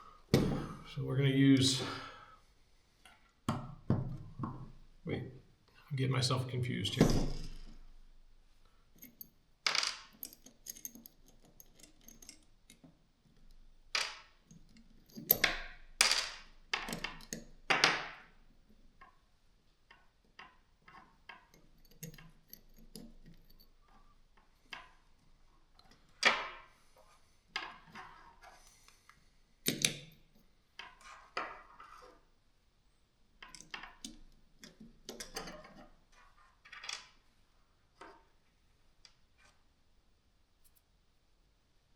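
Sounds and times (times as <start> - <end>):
tools clicking and clinking: 9.0 - 18.0, 20.0 - 24.1, 29.6 - 31.5, 33.4 - 37.2
faint handling noise: 40.6 - 41.0.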